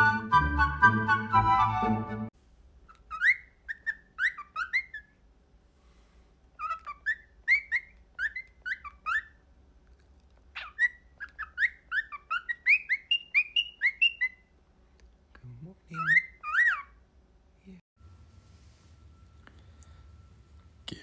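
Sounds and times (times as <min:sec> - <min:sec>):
cockatiel chirping: 0:02.9 - 0:05.2, 0:06.6 - 0:09.4, 0:10.5 - 0:14.5, 0:15.9 - 0:17.0.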